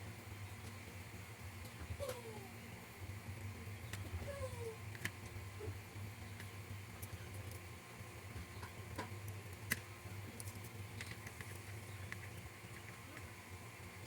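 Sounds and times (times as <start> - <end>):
small parts clicking and tapping: 6.0 - 7.7, 8.3 - 13.4.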